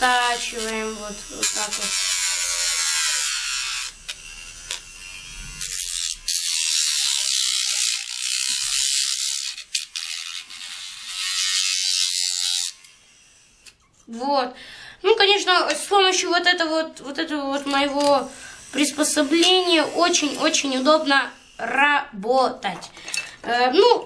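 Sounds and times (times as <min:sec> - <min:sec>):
electric jigsaw cutting wood: 0:00.0 - 0:13.8, 0:17.3 - 0:21.7.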